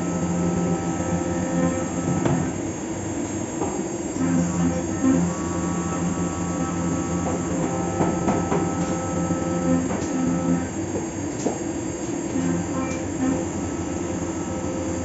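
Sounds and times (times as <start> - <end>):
machine cutting noise: 0.0 - 2.6, 4.2 - 10.8, 12.3 - 15.0
milling machine whine: 0.0 - 15.0.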